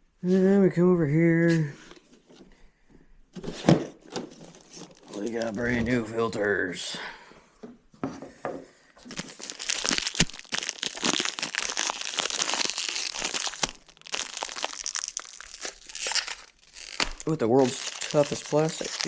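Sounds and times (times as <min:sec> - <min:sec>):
plastic packaging crinkling and tearing: 0:04.3 - 0:05.6, 0:09.0 - 0:19.0.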